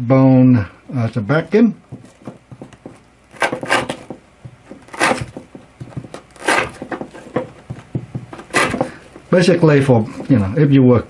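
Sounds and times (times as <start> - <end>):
knife chopping through rope: 1.9 - 9.0.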